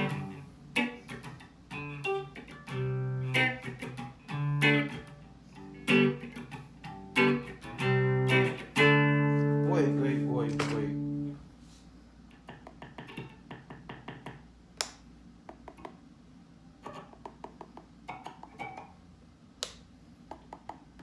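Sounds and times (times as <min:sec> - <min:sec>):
guitar controls clicking: 0:00.0 - 0:11.3, 0:16.8 - 0:19.0
low amplifier hum: 0:00.0 - 0:12.4.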